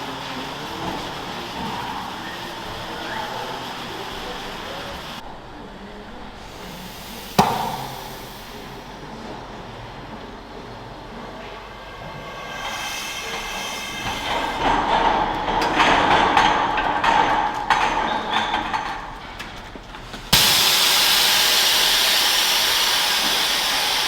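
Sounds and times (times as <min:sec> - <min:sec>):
milking equipment running: 0:00.0 - 0:05.3, 0:05.9 - 0:24.0
loud steady hiss: 0:00.0 - 0:16.8, 0:20.3 - 0:24.0
clicks and clanks: 0:12.0 - 0:20.7.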